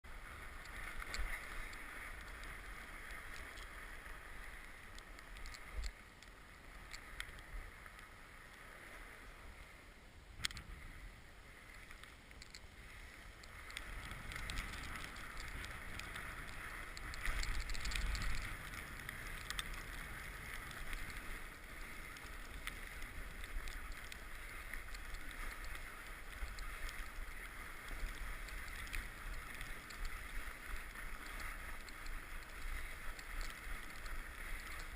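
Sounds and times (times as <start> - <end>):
bike tyres rolling on trail: 0.0 - 34.9
bike clicks and rattles: 0.6 - 7.4, 11.8 - 12.7, 13.4 - 34.9.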